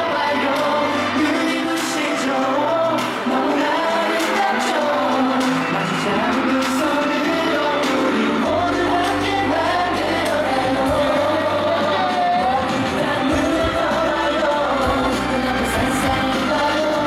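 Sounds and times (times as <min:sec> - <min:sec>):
singing over pop backing track: 0:00.0 - 0:17.0
deep bass: 0:08.4 - 0:17.0.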